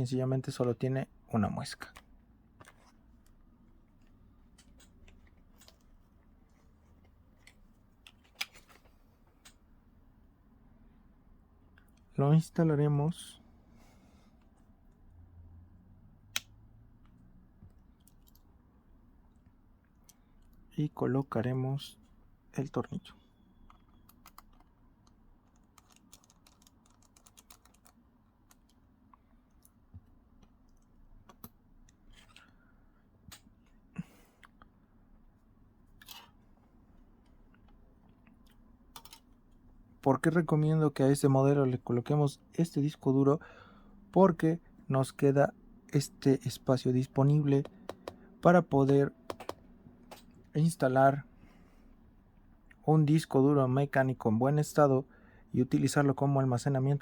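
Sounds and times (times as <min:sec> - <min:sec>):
small clicks of parts handled: 0:35.9 - 0:36.4, 0:37.2 - 0:39.6.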